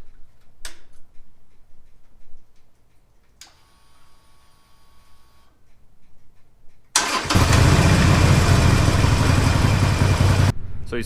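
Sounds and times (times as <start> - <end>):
click: 0.1 - 3.6, 5.7 - 7.2
motorcycle engine cranking and starting: 6.9 - 10.5.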